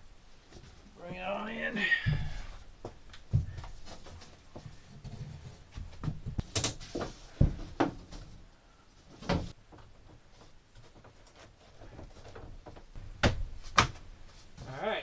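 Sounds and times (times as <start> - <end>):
plywood knocks and thumps: 2.0 - 8.4, 9.1 - 11.2, 11.8 - 14.1.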